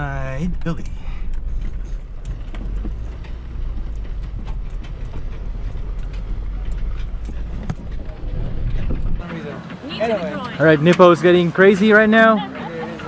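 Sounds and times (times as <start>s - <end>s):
low engine rumble: 0.0s - 13.0s
knocks and rattles: 0.5s - 9.8s.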